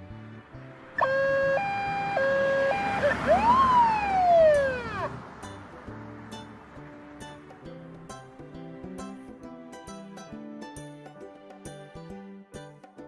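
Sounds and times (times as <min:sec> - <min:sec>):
soft background music: 0:00.0 - 0:13.0
police siren: 0:01.0 - 0:05.2.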